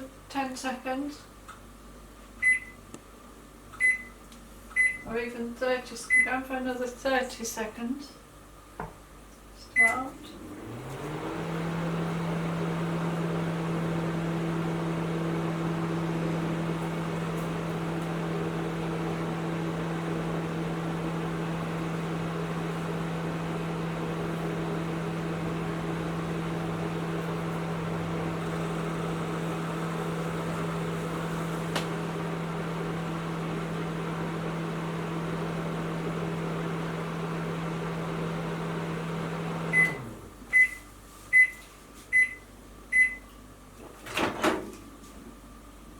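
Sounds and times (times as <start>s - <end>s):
microwave oven humming: 0.0s - 45.9s
high-pitched microwave beeps: 2.4s - 2.8s, 3.8s - 4.2s, 4.8s - 5.1s, 6.1s - 6.4s, 9.8s - 10.1s, 39.7s - 43.4s.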